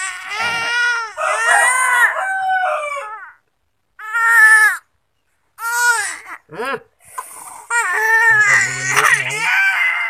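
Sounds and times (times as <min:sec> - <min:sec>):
infant crying: 0:00.0 - 0:02.2, 0:04.0 - 0:04.9, 0:05.6 - 0:06.6, 0:07.5 - 0:10.0.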